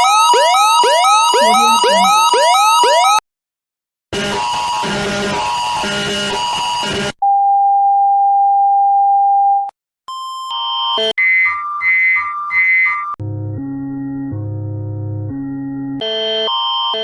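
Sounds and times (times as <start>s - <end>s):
pulsing buzzy alarm: 0.0s - 3.2s
two-pitch alert tone: 1.3s - 2.5s.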